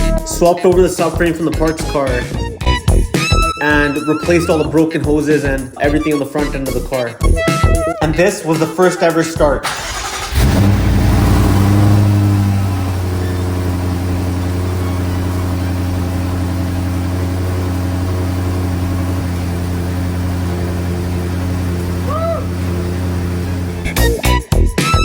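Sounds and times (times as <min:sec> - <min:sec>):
car engine idling: 0:09.6 - 0:24.4.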